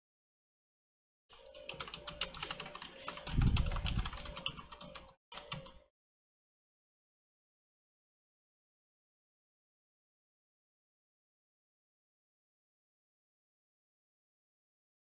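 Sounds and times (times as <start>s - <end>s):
fast typing on a keyboard: 1.3s - 5.8s.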